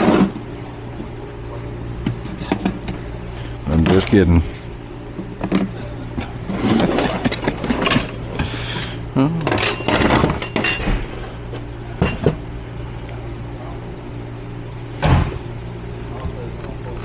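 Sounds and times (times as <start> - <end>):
steady low hum: 0.0 - 17.0
metal parts clinking: 9.4 - 10.9.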